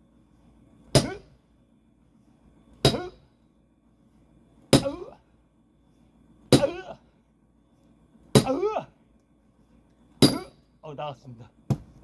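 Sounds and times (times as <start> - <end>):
axe on axe metal clang: 2.9 - 3.2, 10.2 - 10.6.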